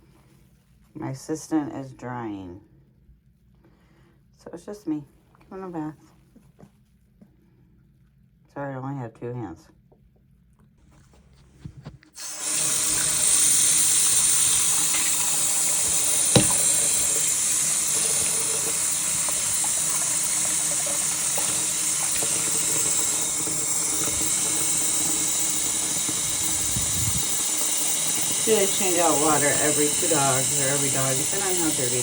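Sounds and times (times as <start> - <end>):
water running from faucet: 12.2 - 32.0
sharp knock: 16.3 - 16.7.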